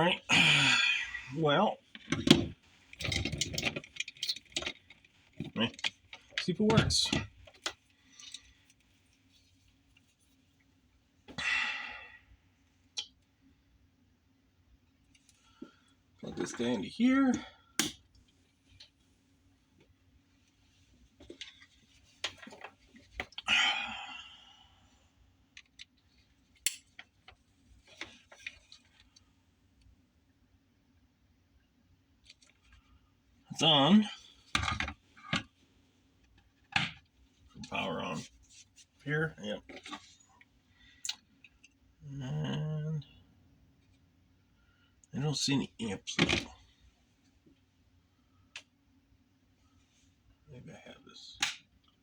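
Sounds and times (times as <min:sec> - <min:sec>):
person sighing: 0:00.3 - 0:01.4, 0:11.4 - 0:12.2, 0:23.5 - 0:24.7.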